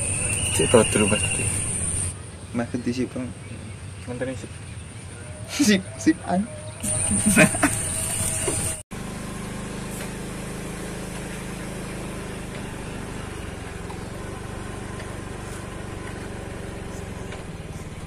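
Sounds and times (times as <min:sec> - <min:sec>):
engine idling: 0:00.0 - 0:02.1, 0:06.8 - 0:18.0.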